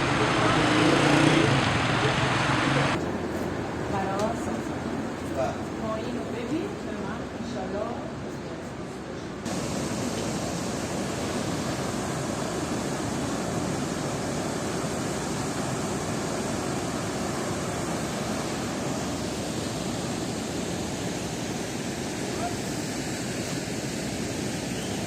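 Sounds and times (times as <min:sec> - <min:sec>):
waterfall rushing: 0:00.0 - 0:03.0, 0:09.5 - 0:24.7.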